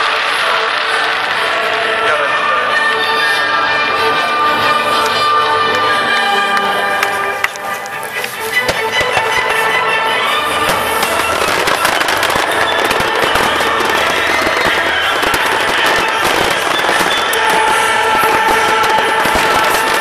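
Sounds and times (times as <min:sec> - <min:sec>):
fireworks bangs and crackling: 0:00.0 - 0:02.6, 0:07.0 - 0:20.0
loud music: 0:00.0 - 0:20.0.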